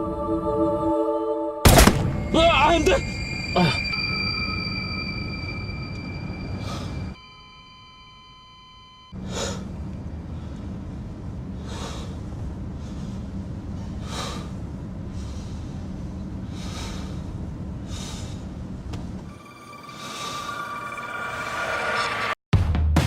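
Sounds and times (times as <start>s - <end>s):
steady low hum: 1.7s - 22.4s
breath-like noisy gusts: 6.4s - 7.2s, 9.2s - 22.4s.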